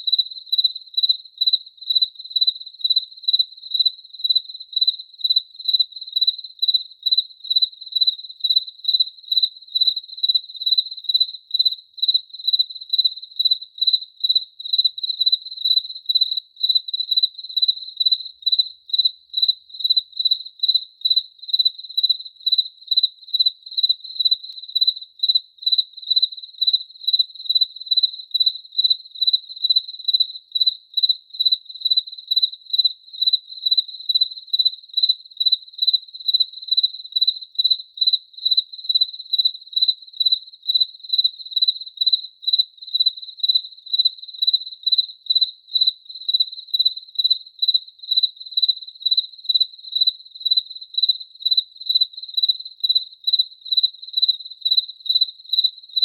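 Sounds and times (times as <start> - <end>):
cricket chirping: 0.0 - 56.0.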